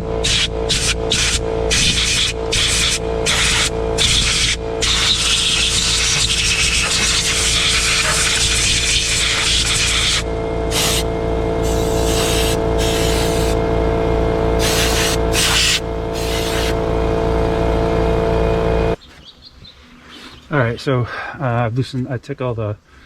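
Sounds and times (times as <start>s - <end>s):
compressed air blasting: 0.0s - 13.7s, 14.5s - 17.6s
air compressor humming: 0.0s - 19.0s.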